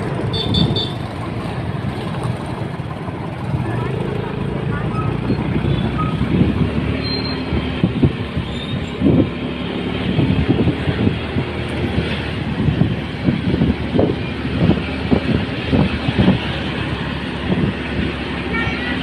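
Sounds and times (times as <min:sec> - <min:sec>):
engine hum: 0:00.0 - 0:19.0.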